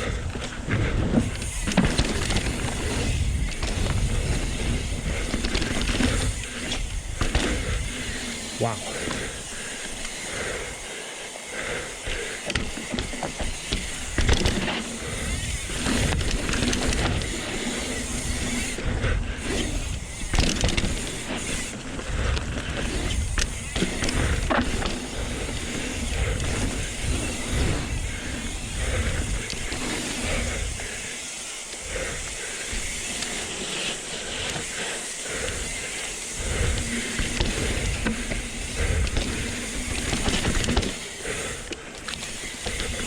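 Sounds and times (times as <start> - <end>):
wind buffeting microphone: 0.0 - 9.6
bike clicks and knocks: 0.0 - 10.8, 11.6 - 43.0
bike tyres rumbling on dirt: 0.0 - 43.0
wind: 0.0 - 43.0.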